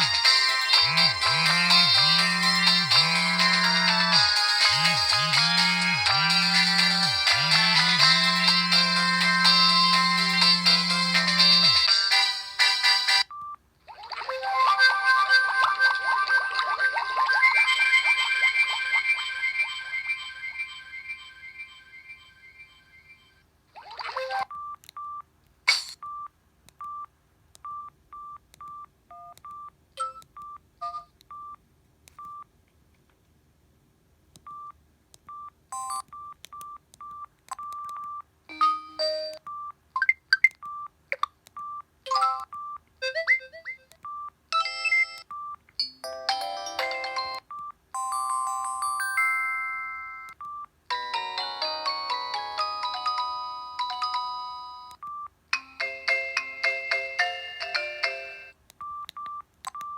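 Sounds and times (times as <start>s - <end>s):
phone ringtones chirps and melodies: 0.0s - 13.3s, 17.2s - 23.4s, 42.1s - 43.9s, 44.6s - 55.0s
polyphonic ringtone melody: 0.0s - 13.3s, 14.3s - 23.2s, 38.5s - 39.4s, 45.8s - 50.3s, 50.9s - 55.0s
phone key beeps: 35.3s - 38.2s, 58.8s - 59.9s.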